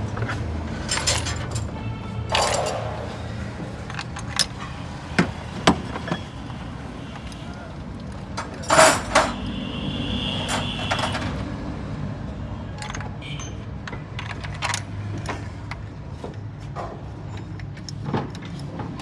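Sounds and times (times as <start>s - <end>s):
metal tools clanking: 0.2s - 3.0s, 3.6s - 6.3s, 7.2s - 9.5s, 10.4s - 11.4s, 12.8s - 15.8s.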